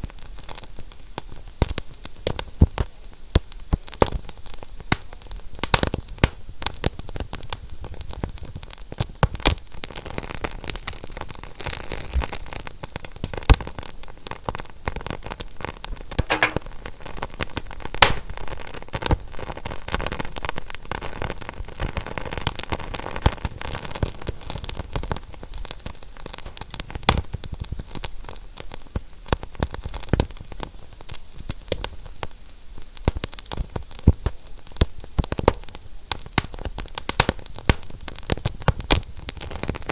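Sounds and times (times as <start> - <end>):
wood fire crackling and popping: 3.8 - 7.6, 16.2 - 16.9, 17.8 - 19.6, 33.0 - 39.9.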